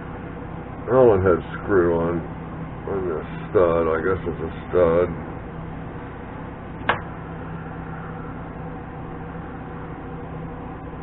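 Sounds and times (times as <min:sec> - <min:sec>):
steady low hum: 0:00.0 - 0:11.0
sharp click: 0:06.8 - 0:07.1.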